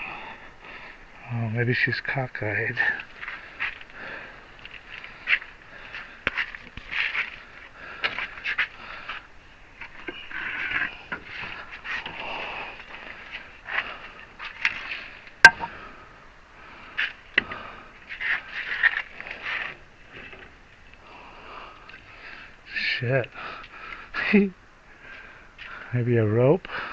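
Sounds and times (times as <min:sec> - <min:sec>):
metal scraping and knocking: 0:15.4 - 0:15.7
sharp knock: 0:15.4 - 0:15.7.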